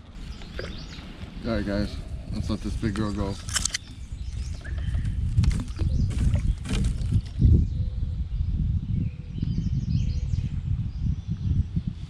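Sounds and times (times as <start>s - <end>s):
water sloshing against a kayak: 0.0s - 7.5s.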